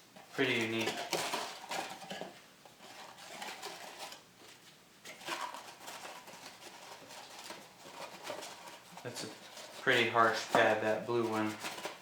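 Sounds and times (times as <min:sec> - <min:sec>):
foam pads rustling and clicking: 0:00.2 - 0:12.0.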